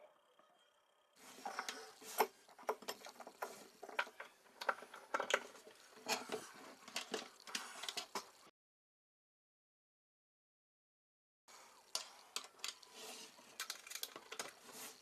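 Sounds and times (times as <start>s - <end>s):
small parts and tools clicking: 1.3s - 8.5s, 11.6s - 15.0s.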